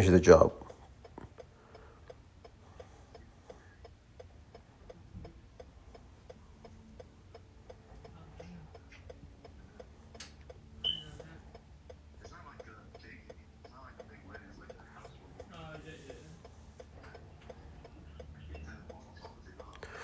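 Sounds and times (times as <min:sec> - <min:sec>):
faint steady ticking: 0:00.0 - 0:20.0
short high beep: 0:10.8 - 0:11.2.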